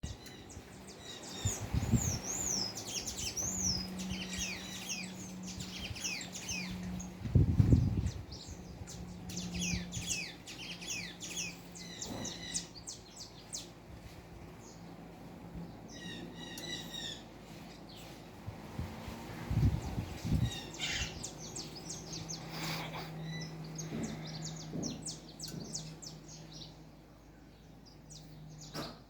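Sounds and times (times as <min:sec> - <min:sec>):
small animals chirping and squeaking: 0:00.0 - 0:13.8, 0:19.8 - 0:26.7.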